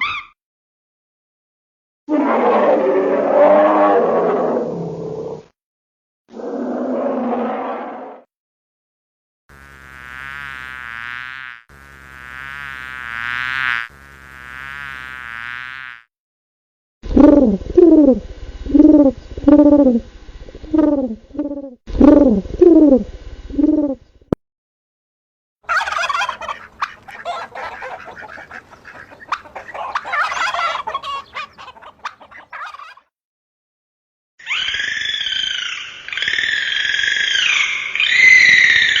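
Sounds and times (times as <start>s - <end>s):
long pitched animal calls: 2.1s - 5.5s, 17.0s - 20.0s, 20.6s - 24.0s, 34.4s - 39.0s
scratchy clicking chatter: 26.5s - 30.2s.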